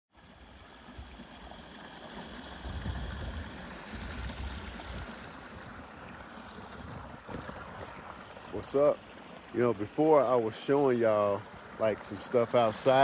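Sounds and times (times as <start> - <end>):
wind gusts on microphone: 2.6 - 5.8.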